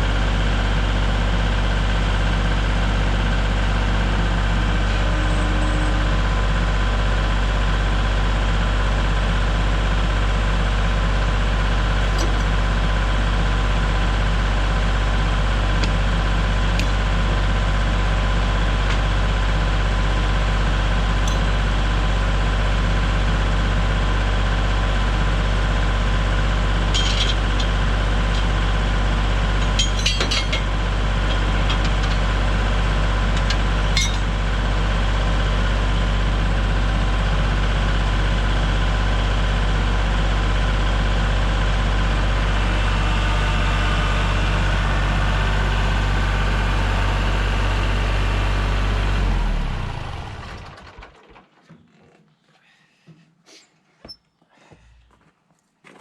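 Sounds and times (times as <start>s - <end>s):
engine idling: 0.0s - 51.3s
metallic clinking: 21.2s - 21.6s, 29.6s - 30.7s, 34.0s - 34.3s.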